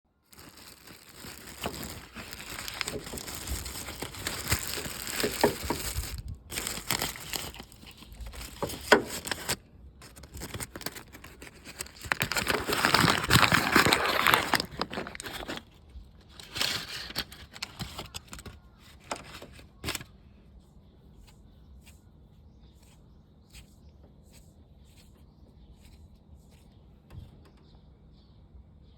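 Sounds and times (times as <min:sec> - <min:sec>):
hands crinkling and rustling: 0:00.2 - 0:20.1.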